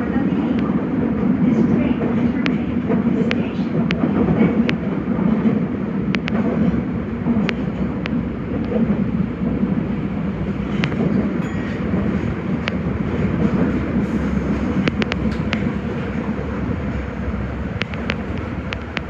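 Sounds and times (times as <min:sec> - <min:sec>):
train wheels rumbling on rail: 0:00.0 - 0:19.0
sharp clicks: 0:06.1 - 0:06.5, 0:07.4 - 0:08.8, 0:14.8 - 0:15.8, 0:17.8 - 0:19.0.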